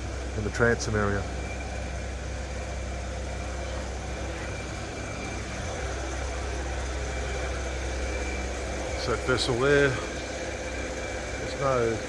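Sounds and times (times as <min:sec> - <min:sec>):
faint high whine: 0:00.0 - 0:12.0
low machinery hum: 0:00.0 - 0:12.0.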